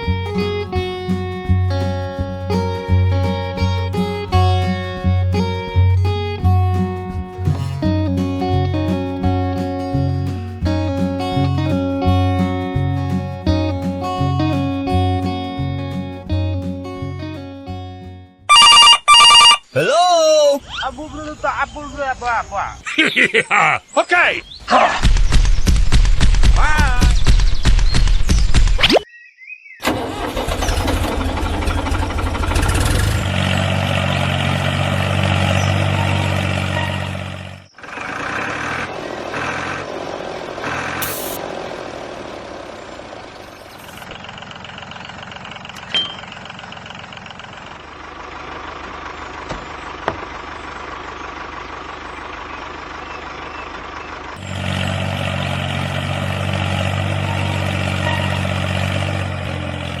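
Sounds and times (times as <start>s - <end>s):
truck engine running: 0.0s - 19.6s, 29.8s - 60.0s.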